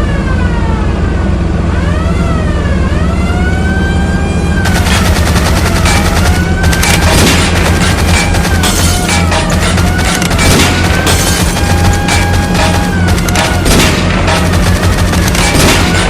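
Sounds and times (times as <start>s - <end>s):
siren wail: 0.0s - 16.0s
car engine running: 3.9s - 16.0s
rapid gunfire: 4.6s - 16.0s.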